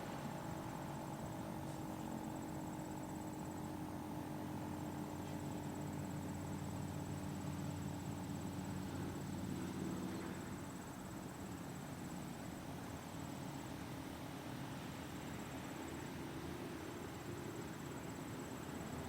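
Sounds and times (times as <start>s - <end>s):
crickets trilling: 0.0s - 19.0s
low steady hum: 0.0s - 19.0s.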